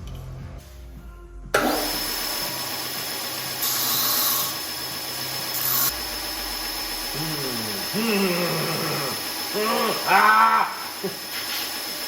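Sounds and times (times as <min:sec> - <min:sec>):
belt sander whining: 0:01.8 - 0:12.0
steel grinding on sanding belt: 0:03.5 - 0:04.6, 0:05.4 - 0:06.0.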